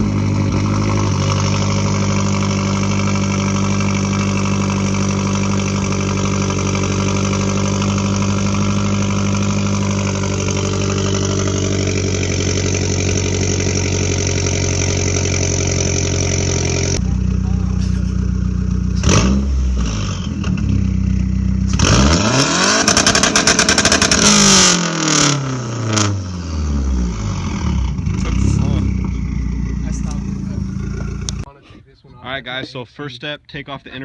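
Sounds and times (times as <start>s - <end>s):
car engine idling: 0.0s - 31.5s.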